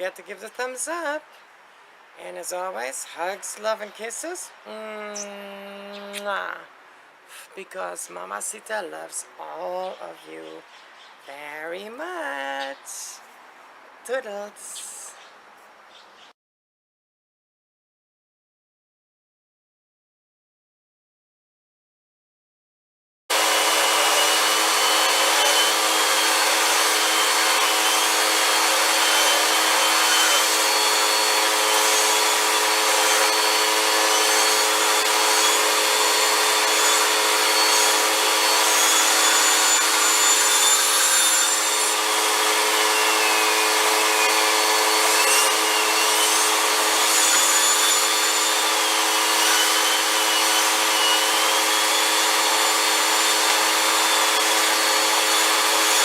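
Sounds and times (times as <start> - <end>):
vacuum cleaner motor running: 23.3 - 56.0.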